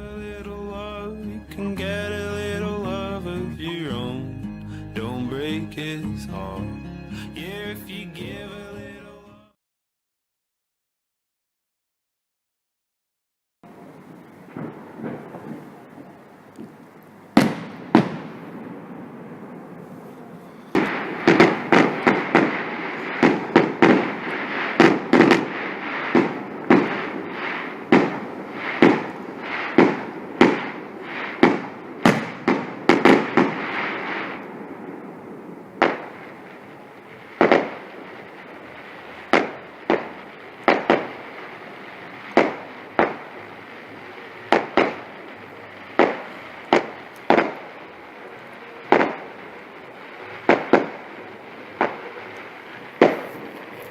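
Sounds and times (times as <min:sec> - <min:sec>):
fireworks bangs: 0:13.7 - 0:53.9
hissing crackle: 0:13.7 - 0:53.9.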